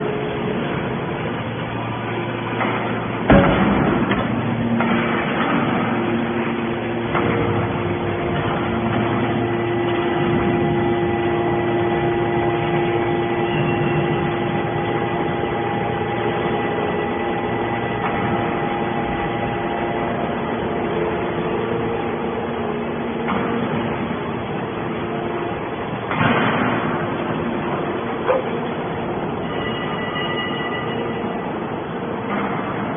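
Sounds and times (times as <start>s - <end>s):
hydraulic baler humming: 0.0s - 32.9s
loud metallic clank: 2.5s - 10.7s, 26.1s - 27.2s.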